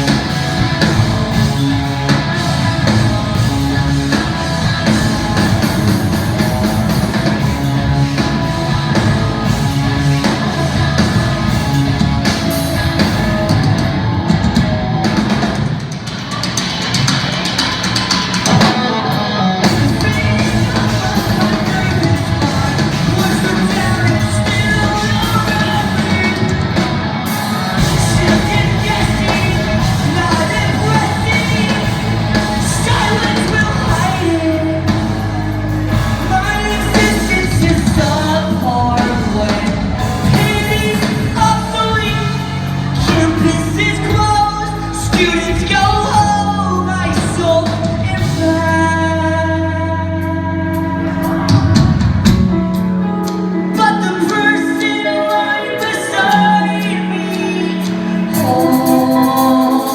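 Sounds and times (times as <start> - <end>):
rock band playing live: 0.0 - 59.9
person singing: 17.4 - 59.9.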